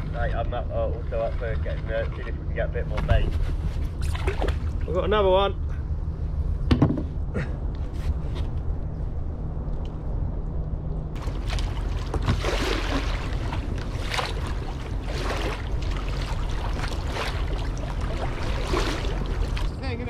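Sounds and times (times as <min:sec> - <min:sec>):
water splashing and lapping: 0:00.0 - 0:02.6, 0:03.4 - 0:04.9, 0:11.2 - 0:20.0
steady low rumble: 0:00.0 - 0:20.0.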